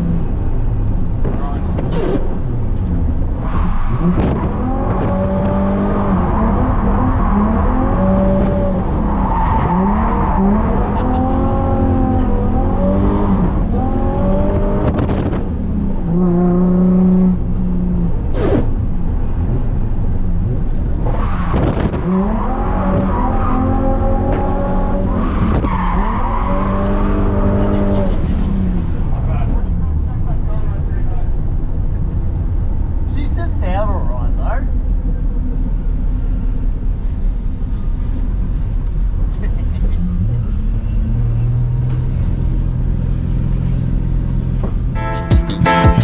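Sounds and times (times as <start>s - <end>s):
car engine revving: 0.0s - 28.7s.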